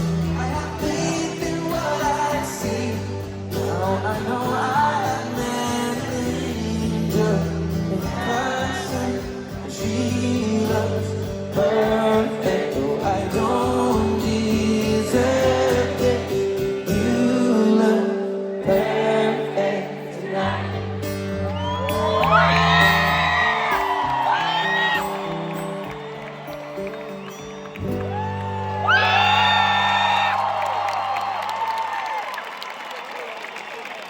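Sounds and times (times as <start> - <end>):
live pop ballad over sound system: 0.0 - 32.0
crowd whooping: 20.4 - 34.0.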